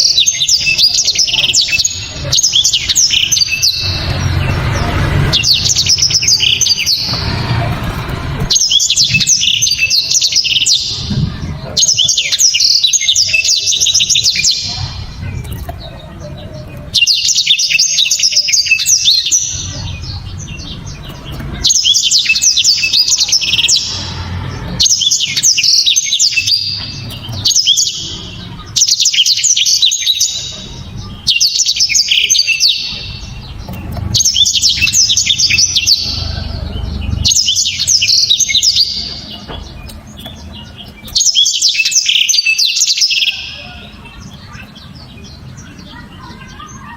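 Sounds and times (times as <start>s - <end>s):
canary singing: 0.0s - 46.9s
low background rumble: 32.8s - 41.2s.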